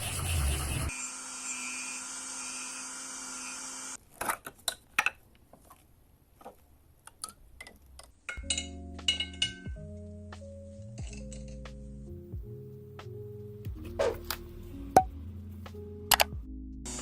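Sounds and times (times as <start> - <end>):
music: 8.3 - 17.0.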